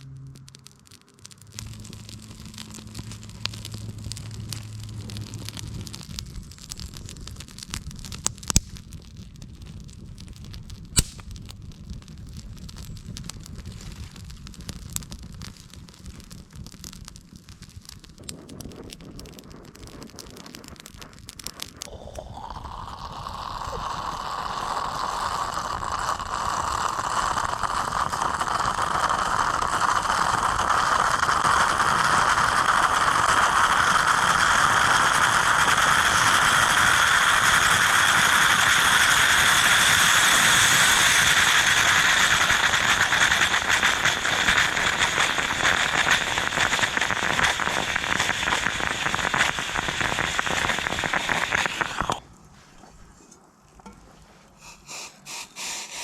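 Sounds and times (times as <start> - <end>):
food sizzling in a pan: 21.9 - 52.2.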